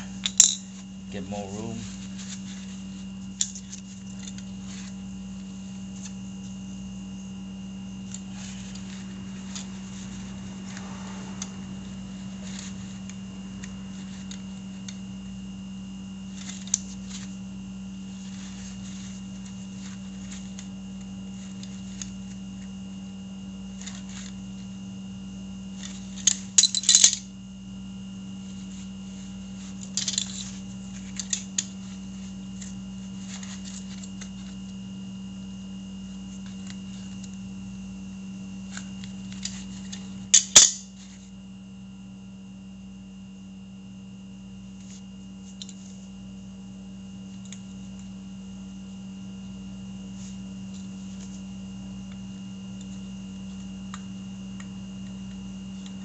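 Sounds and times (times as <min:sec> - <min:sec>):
steady low hum: 0:00.0 - 0:56.0
metal tools clattering: 0:00.1 - 0:01.8, 0:26.2 - 0:27.2, 0:30.0 - 0:30.5.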